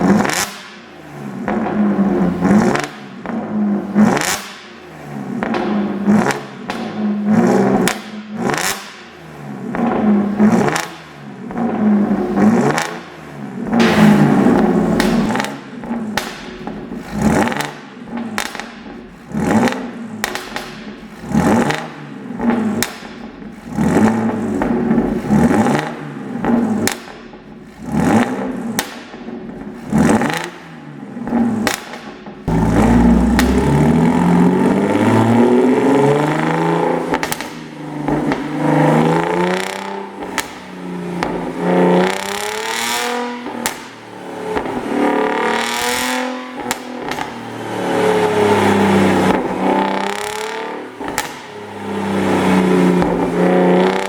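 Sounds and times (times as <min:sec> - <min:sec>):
car engine revving: 0:00.0 - 0:54.0
exhaust pops and crackles: 0:13.6 - 0:35.4, 0:37.0 - 0:44.9, 0:46.6 - 0:47.5, 0:49.2 - 0:51.6, 0:52.8 - 0:54.0.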